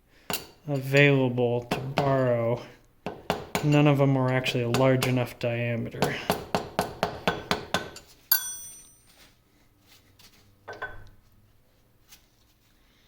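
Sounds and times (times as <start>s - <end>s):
hammer tapping metal punch: 3.0s - 9.0s
ringing metallic clink: 8.3s - 9.1s.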